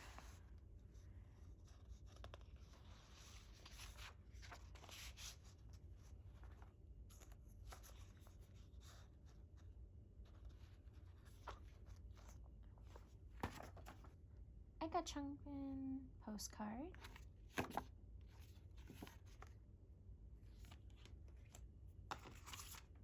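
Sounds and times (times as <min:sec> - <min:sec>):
paper rustling and sliding: 0:10.3 - 0:14.2, 0:21.5 - 0:22.9.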